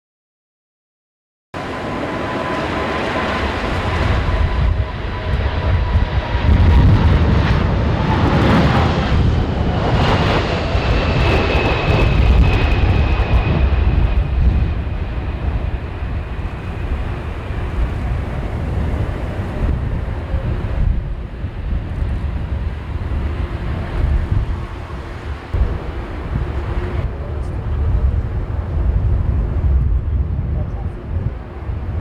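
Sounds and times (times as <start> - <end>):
jet engines passing: 1.6 - 32.0.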